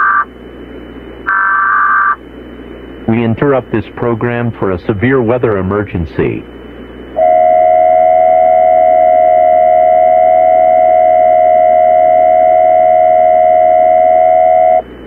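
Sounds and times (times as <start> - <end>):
loud two-tone alarm: 1.3 - 2.2, 7.2 - 14.8.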